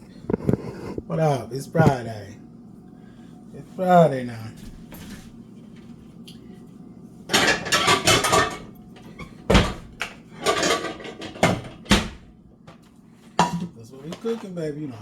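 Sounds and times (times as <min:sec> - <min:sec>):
kitchen clatter: 0:07.3 - 0:12.2, 0:13.4 - 0:14.5
hard knocks of cupboards and pans: 0:09.5 - 0:12.3.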